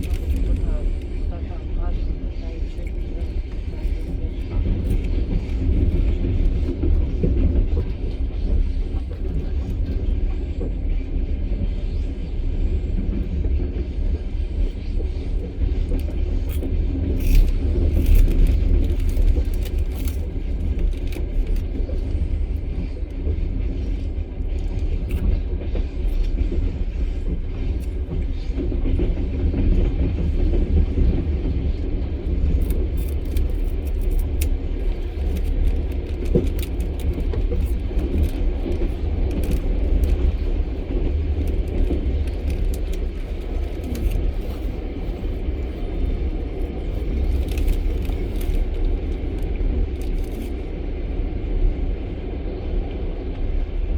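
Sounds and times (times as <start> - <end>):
train wheels rumbling on rails: 0.0 - 53.9
clicks and rattles: 15.9 - 22.1, 32.4 - 44.7.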